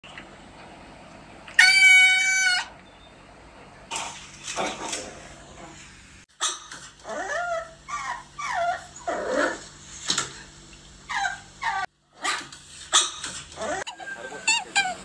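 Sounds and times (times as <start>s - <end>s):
pet animal whining: 6.4s - 9.7s, 11.0s - 15.0s.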